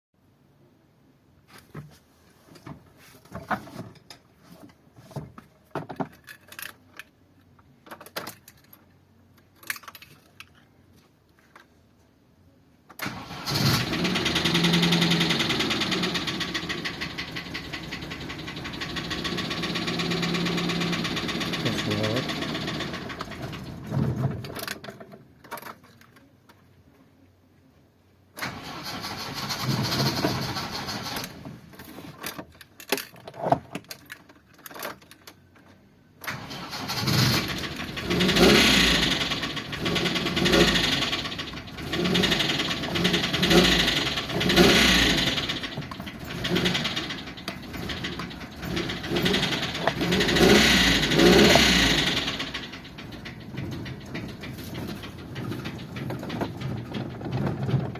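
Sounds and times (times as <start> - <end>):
engine starting and revving: 13.0 - 24.0, 28.4 - 31.5, 36.2 - 57.9
engine knock: 13.6 - 23.9, 36.8 - 57.9.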